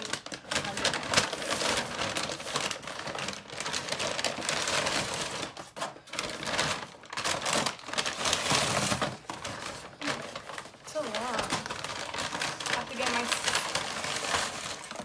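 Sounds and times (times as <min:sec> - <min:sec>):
paper bags rustling and crinkling: 0:00.0 - 0:15.0.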